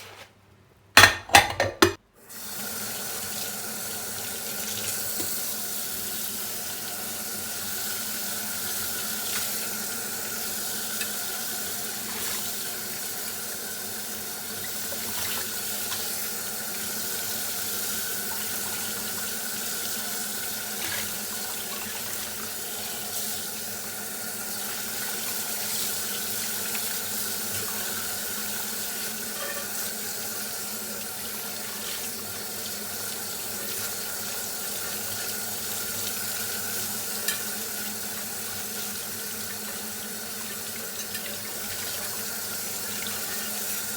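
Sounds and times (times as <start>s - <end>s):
dishware knocking: 1.0s - 2.0s
tap water running into sink: 2.6s - 43.9s.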